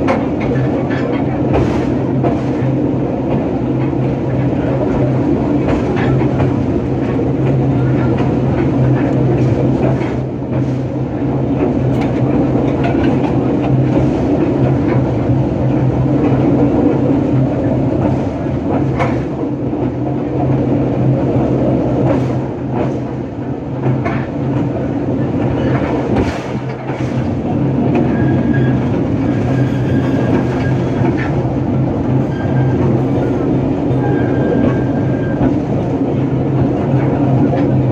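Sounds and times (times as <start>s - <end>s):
train wheels clattering on track: 0.0s - 37.9s
high wheel squeal: 28.1s - 31.0s, 32.2s - 35.5s.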